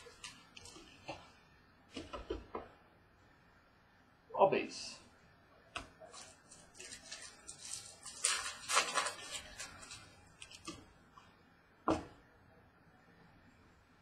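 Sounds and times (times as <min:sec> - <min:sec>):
cards sliding and rustling: 0:06.1 - 0:10.8.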